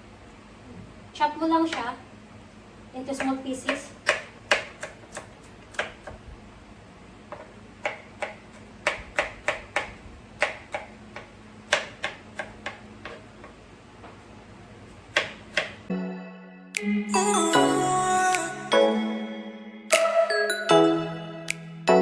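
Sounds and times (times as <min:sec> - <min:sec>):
knife chopping on cutting board: 0:03.2 - 0:06.2, 0:07.3 - 0:14.2, 0:14.9 - 0:15.8.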